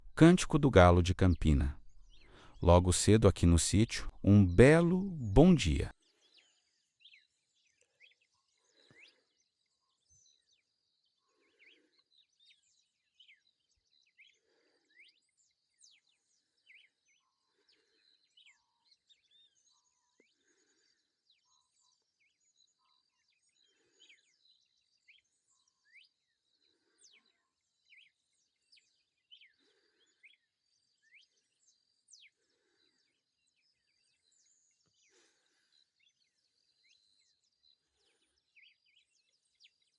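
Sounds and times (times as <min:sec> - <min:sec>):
cardinal song: 0:00.0 - 0:01.8, 0:02.6 - 0:05.9.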